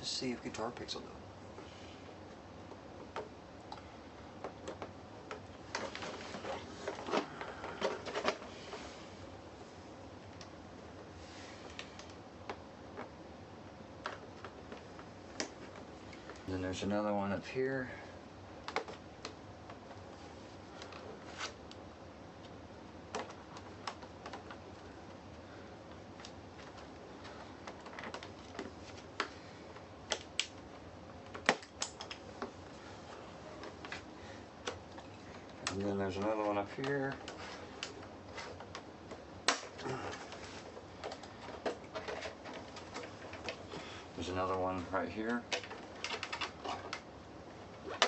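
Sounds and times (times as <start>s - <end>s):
plastic clicks and scrapes: 33.6s - 43.8s, 45.5s - 47.1s.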